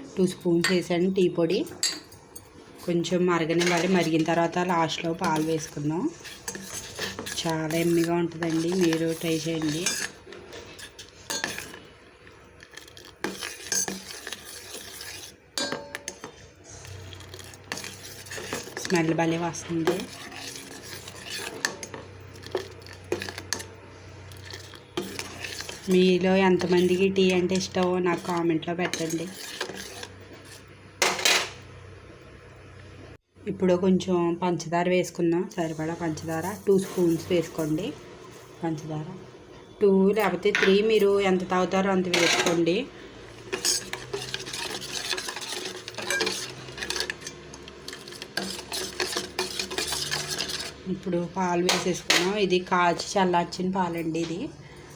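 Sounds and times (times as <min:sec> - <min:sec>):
metal spoon clinking and scraping pot: 0:00.2 - 0:31.7, 0:35.8 - 0:38.6, 0:40.2 - 0:53.2
spoon clinking against a pan: 0:01.7 - 0:02.2, 0:10.8 - 0:11.8, 0:13.2 - 0:16.3.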